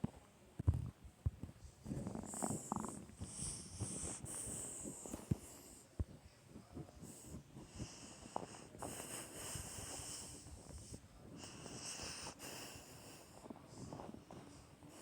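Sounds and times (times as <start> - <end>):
person breathing: 2.2 - 5.9, 7.0 - 15.0.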